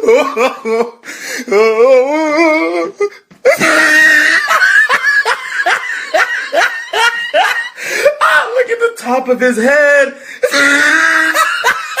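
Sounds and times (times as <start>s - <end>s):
person laughing loudly: 0.0s - 1.0s, 3.4s - 8.4s, 10.4s - 12.0s.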